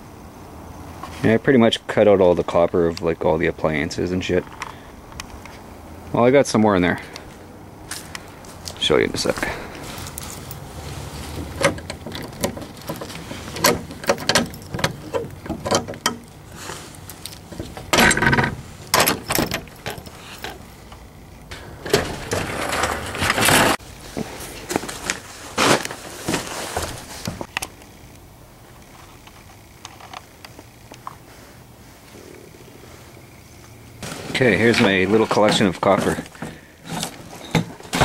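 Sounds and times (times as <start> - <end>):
scraping or rustling: 7.3 - 27.5, 34.0 - 38.0.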